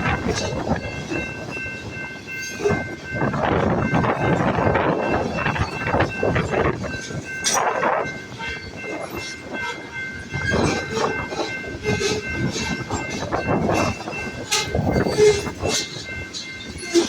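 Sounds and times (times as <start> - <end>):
train wheels rumbling and clattering: 0.0 - 17.0.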